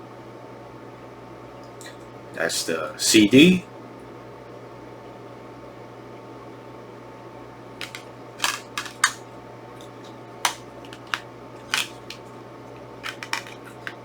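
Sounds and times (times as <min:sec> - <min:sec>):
plastic disc case clicks: 0:07.8 - 0:09.2, 0:09.8 - 0:12.3, 0:13.0 - 0:14.0.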